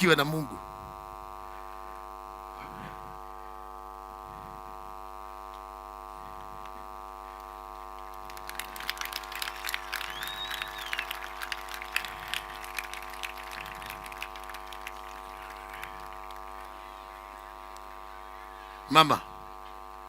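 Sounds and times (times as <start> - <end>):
electrical mains hum: 0.0 - 20.0
sharp crackling clicks: 8.0 - 16.8.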